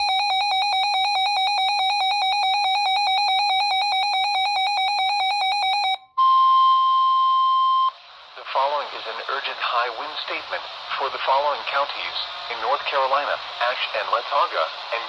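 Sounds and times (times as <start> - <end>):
rapid alarm beeping: 0.0 - 6.7
steady warning alarm tone: 0.0 - 6.7.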